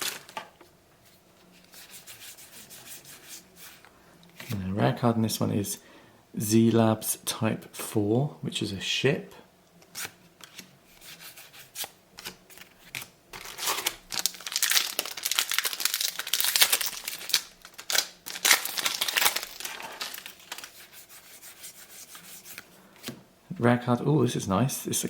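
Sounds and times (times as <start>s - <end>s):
wrapper tearing and crinkling: 0.0s - 0.4s, 11.8s - 20.9s
cards being handled: 0.0s - 2.2s, 9.8s - 23.2s.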